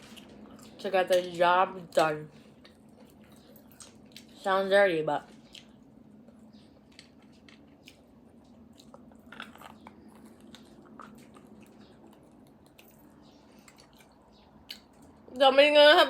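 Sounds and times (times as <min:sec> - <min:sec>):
person chewing and mouth smacks: 0:02.4 - 0:04.4, 0:05.3 - 0:15.3.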